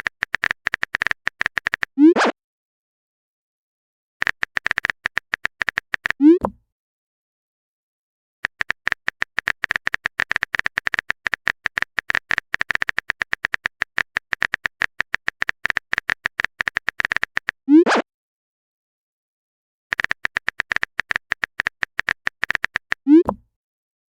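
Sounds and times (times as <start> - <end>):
phone keyboard typing clicks: 0.0 - 2.0, 4.2 - 6.6, 8.4 - 17.6, 19.9 - 23.4.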